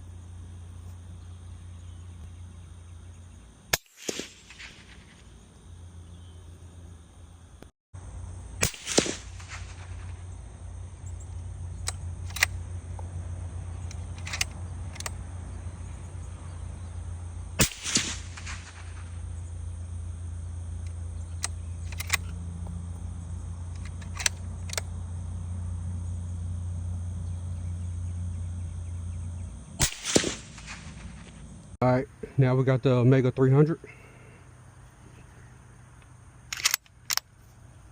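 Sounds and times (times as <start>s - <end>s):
low hum: 0.0s - 32.4s
suppressed rifle shots: 3.7s - 5.3s, 8.6s - 10.2s, 11.8s - 12.6s, 13.8s - 15.2s, 17.6s - 19.2s, 21.3s - 22.4s, 23.8s - 24.9s, 29.8s - 31.5s.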